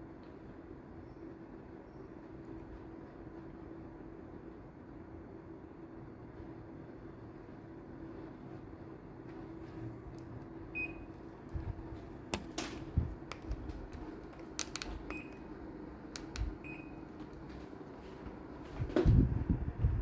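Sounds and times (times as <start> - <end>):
air conditioner beeps: 9.4 - 18.9
sharp clicks: 12.3 - 15.5, 16.2 - 16.6.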